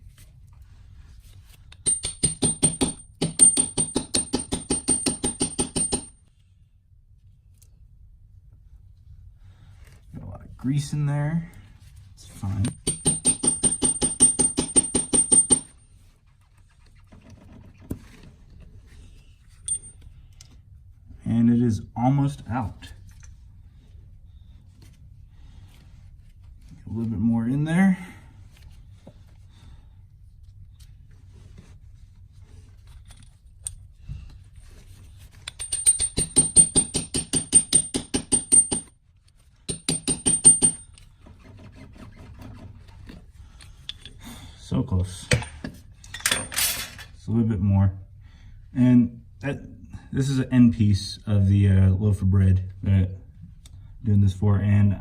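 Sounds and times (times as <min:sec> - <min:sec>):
hammer striking metal bolt: 0:39.7 - 0:40.9.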